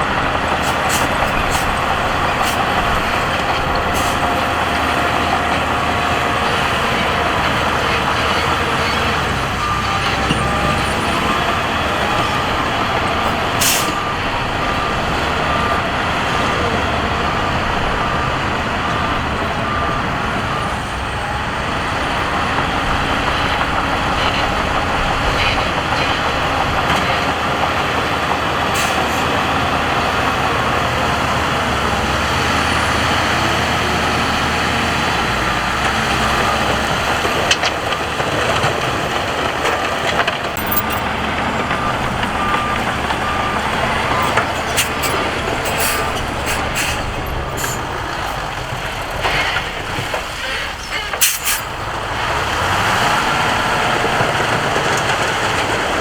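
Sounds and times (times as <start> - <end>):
heavy diesel machinery running: 0.0 - 56.0
reversing alarm beeping: 0.1 - 27.6, 39.6 - 49.2.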